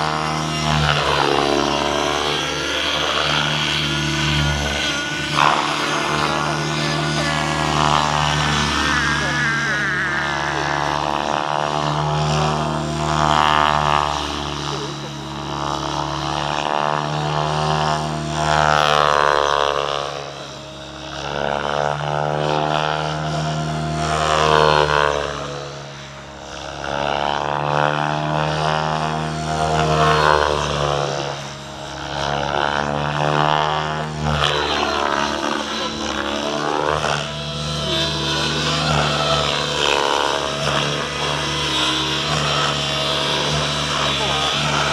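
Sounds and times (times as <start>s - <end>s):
model helicopter rotor whine: 0.0s - 44.9s.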